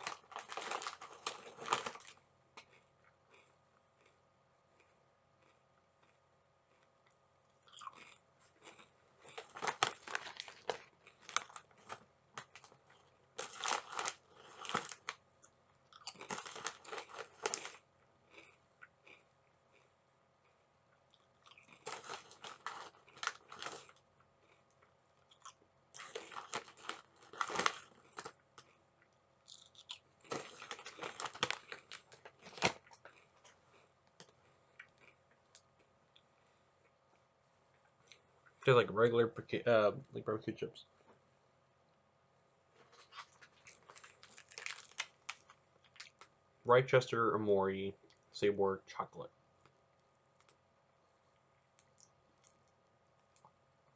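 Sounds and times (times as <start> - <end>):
person crunching crisps: 0.0 - 4.2, 4.8 - 37.0, 42.8 - 46.4.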